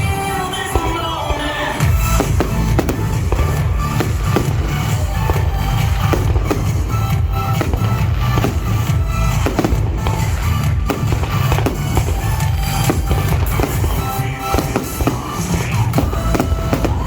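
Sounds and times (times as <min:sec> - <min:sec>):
fireworks bursting: 0:00.0 - 0:17.0
loud show music: 0:00.0 - 0:17.0.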